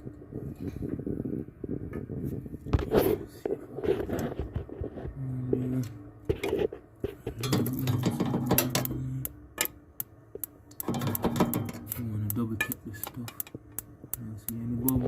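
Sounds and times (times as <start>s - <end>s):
boiler low hum: 0.0s - 15.0s
spark igniter clicking: 8.7s - 15.0s.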